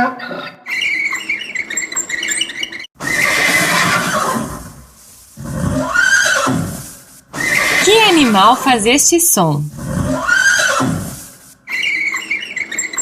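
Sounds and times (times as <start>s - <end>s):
horse neighing: 3.0s - 4.8s, 5.4s - 8.8s, 9.7s - 12.8s.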